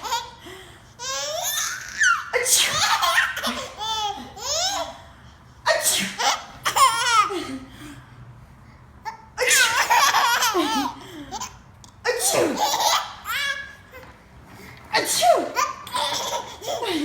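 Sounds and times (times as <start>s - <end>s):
baby laughing: 0.0s - 0.4s, 1.0s - 5.0s, 6.2s - 7.4s, 9.1s - 11.6s, 12.2s - 14.1s, 15.4s - 17.0s
person sneezing: 2.4s - 3.0s, 5.7s - 6.4s, 12.1s - 12.8s, 14.9s - 15.7s.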